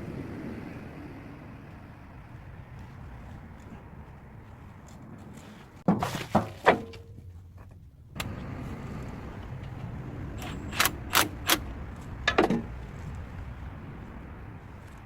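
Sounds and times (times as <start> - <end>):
vehicle engine running: 8.1 - 15.0
sharp metallic clicks and knocks: 9.6 - 12.8.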